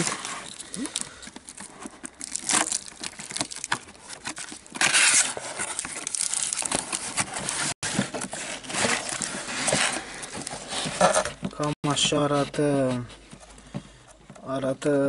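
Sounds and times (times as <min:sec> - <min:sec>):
packaging crinkling and rustling: 0:00.0 - 0:11.8.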